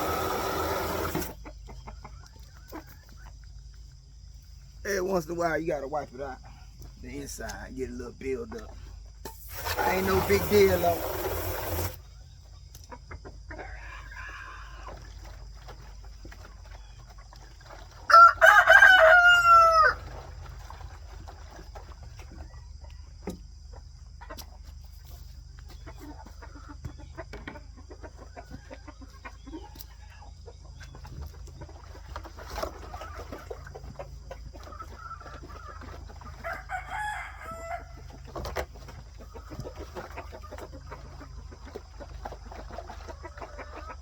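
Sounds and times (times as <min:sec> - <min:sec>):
hens clucking softly: 0:00.0 - 0:07.6, 0:08.4 - 0:44.0
rooster crowing: 0:18.1 - 0:20.1, 0:36.4 - 0:38.1.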